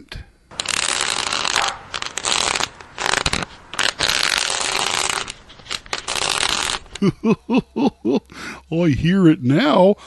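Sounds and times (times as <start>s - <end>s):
hose nozzle scraping on cement: 0.5s - 7.0s.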